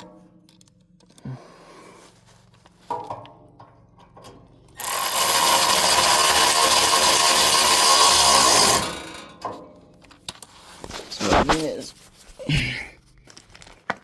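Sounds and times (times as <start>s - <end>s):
power drill whining: 4.8s - 9.2s.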